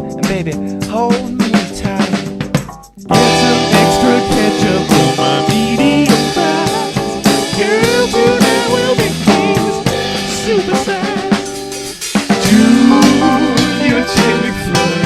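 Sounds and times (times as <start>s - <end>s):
drum kit beat: 0.0s - 15.0s
sliding lead melody: 0.0s - 15.0s
sustained chords: 12.4s - 14.5s.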